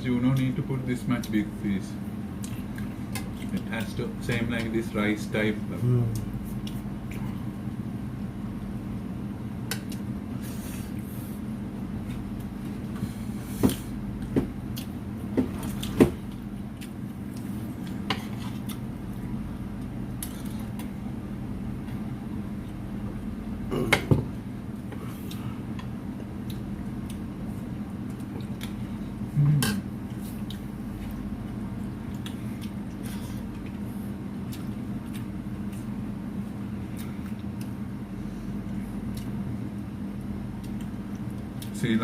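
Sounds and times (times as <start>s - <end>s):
low background hum: 0.0s - 42.0s.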